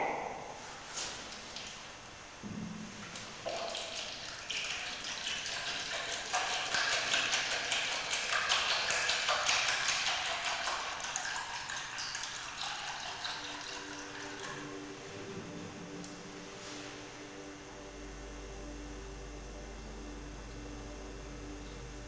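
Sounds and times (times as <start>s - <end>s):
faint steady hum: 0.0s - 22.0s
liquid trickling and gurgling: 0.7s - 17.1s.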